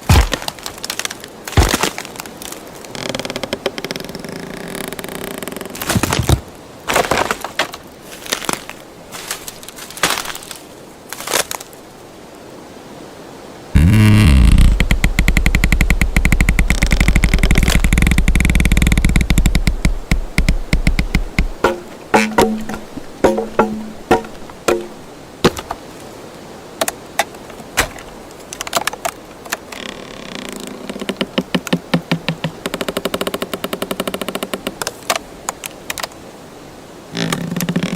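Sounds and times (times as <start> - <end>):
wood cracking and splintering: 0.0 - 11.7, 13.8 - 26.0, 26.8 - 36.1
creaking scrape: 13.8 - 25.6, 29.7 - 33.3.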